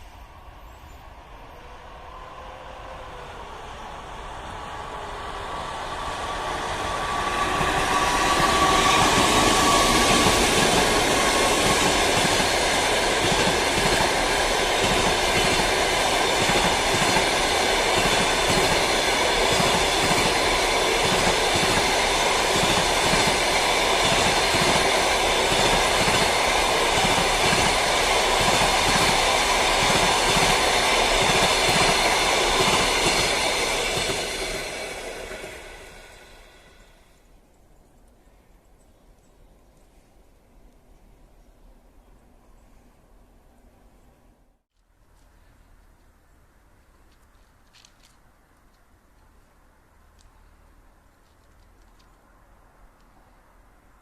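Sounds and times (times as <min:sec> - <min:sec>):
train wheels clattering over rail joints: 0:06.4 - 0:36.3.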